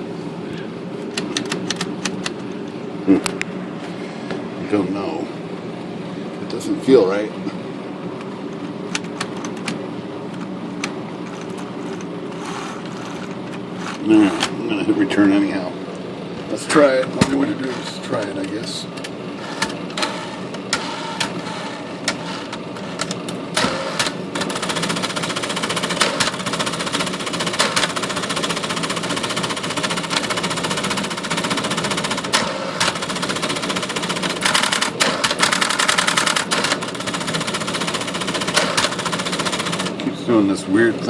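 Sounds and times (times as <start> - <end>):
rapid mechanical clatter: 1.0 - 2.6, 8.6 - 14.5, 16.7 - 40.2
typewriter mechanism clicks: 1.1 - 2.4, 22.0 - 40.1
typewriter motor running: 1.1 - 2.5, 8.9 - 14.5, 17.2 - 40.2.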